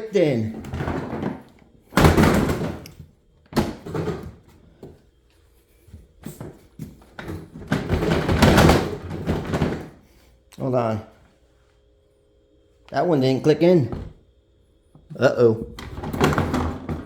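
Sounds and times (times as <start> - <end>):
plastic tool boxes clunking: 0.5 - 5.0, 6.3 - 10.0, 15.6 - 17.0.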